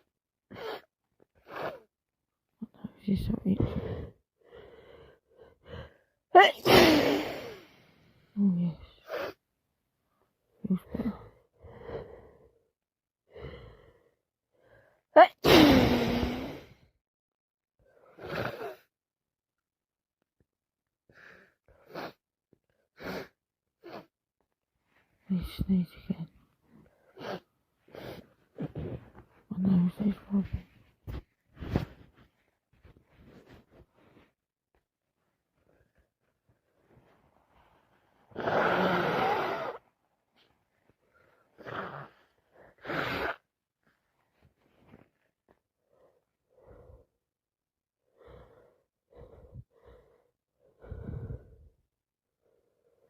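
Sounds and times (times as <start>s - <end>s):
woman breathing: 48.0s - 53.0s.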